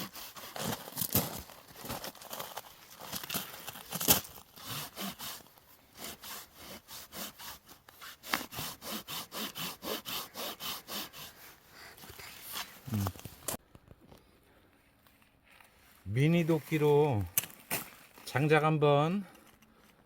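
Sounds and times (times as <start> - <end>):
hand saw cutting log: 0.0 - 2.0, 4.0 - 12.8.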